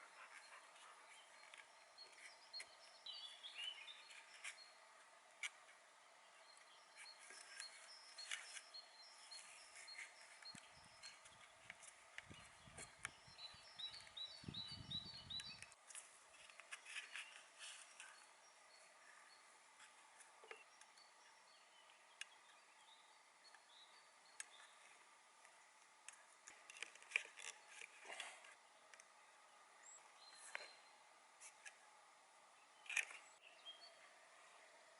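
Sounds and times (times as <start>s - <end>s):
small clicks and ticks: 24.4s - 29.1s.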